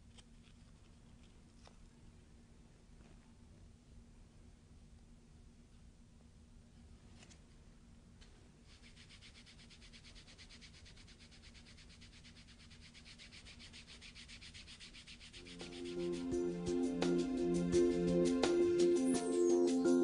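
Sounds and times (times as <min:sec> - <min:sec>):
hand rubbing over tape: 0:08.6 - 0:16.5.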